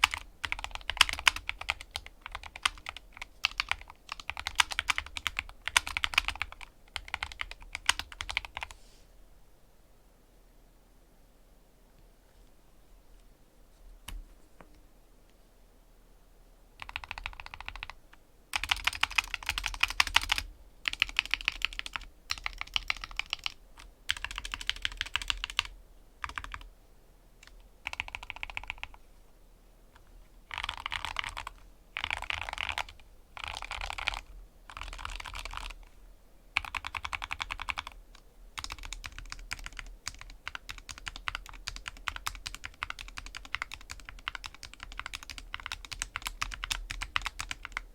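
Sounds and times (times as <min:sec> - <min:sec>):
rapid mechanical keyboard keystrokes: 0:00.0 - 0:08.7, 0:16.8 - 0:26.7, 0:27.4 - 0:29.0, 0:30.5 - 0:35.8, 0:36.6 - 0:47.9.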